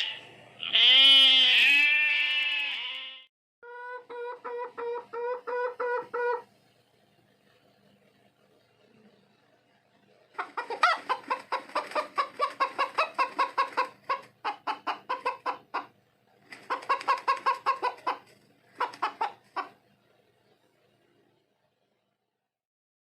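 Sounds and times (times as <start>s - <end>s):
chicken clucking rapidly: 3.6s - 6.5s, 10.3s - 19.9s.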